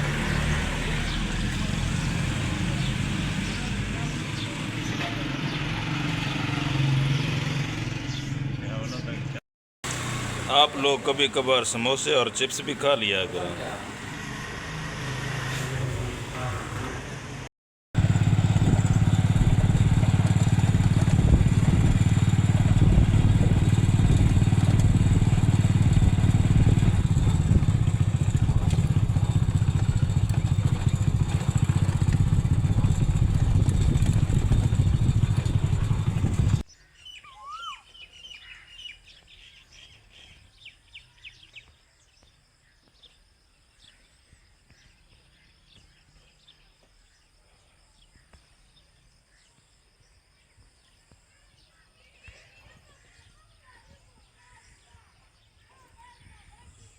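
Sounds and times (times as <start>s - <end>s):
vehicle engine and road noise: 0.0s - 36.7s
birds chirping: 0.1s - 14.2s, 18.0s - 56.9s.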